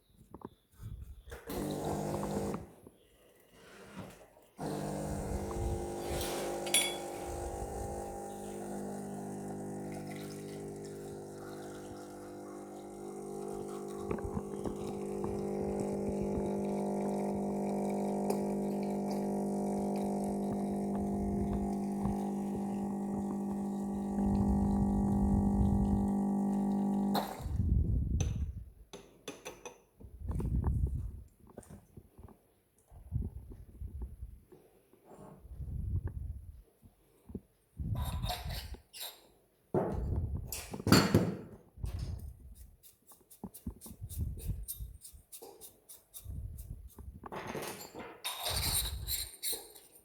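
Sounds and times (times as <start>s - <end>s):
espresso machine pump humming: 1.5s - 2.7s, 4.6s - 27.6s.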